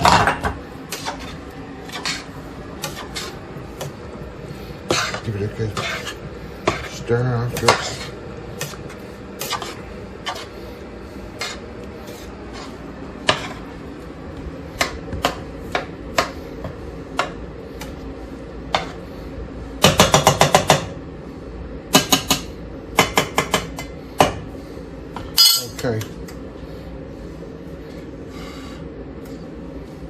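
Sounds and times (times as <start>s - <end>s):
spoon scraping pot: 0.9s - 3.9s, 4.8s - 10.5s.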